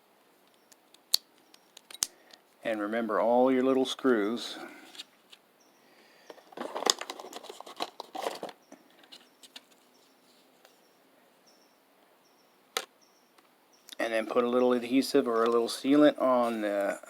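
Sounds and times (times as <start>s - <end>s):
faint high chirp: 0.4s - 0.8s, 1.4s - 1.8s, 4.9s - 6.4s, 8.6s - 15.4s.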